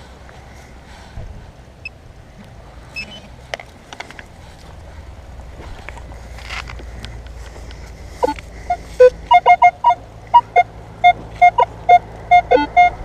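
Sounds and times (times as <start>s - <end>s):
metal detector beeps: 8.2s - 13.0s.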